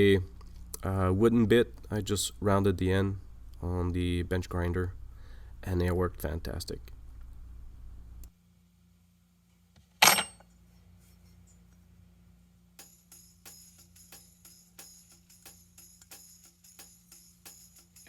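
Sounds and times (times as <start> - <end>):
music with jingling percussion: 12.8 - 18.0.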